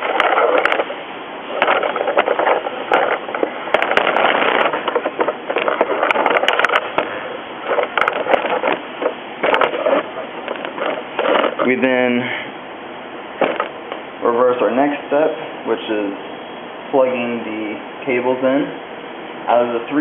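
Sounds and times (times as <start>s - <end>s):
hands rubbing and scraping: 0.0s - 11.8s
small clicks and knocks: 7.7s - 11.7s, 13.4s - 13.8s.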